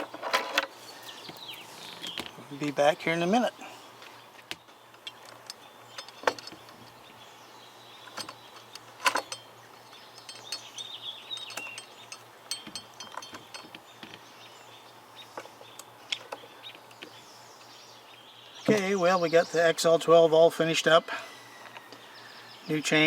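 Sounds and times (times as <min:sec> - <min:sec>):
bird chirping: 0:00.7 - 0:23.0
metallic clicks of handled tools: 0:08.1 - 0:13.8.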